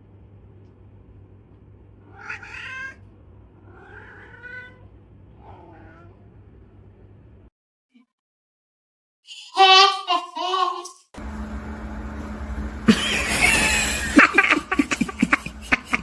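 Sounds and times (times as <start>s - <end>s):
steady low hum: 0.0s - 7.5s, 11.2s - 16.0s
cat meowing: 2.0s - 3.0s, 3.6s - 6.2s.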